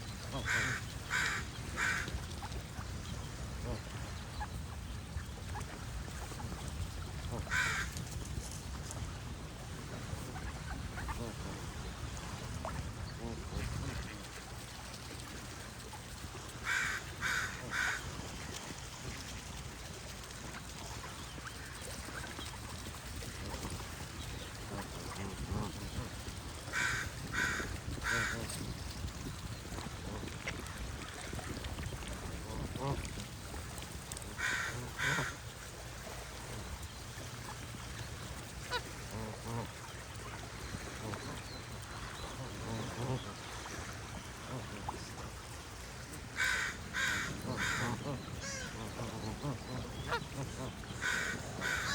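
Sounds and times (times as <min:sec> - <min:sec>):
geese honking: 0:46.3 - 0:51.9.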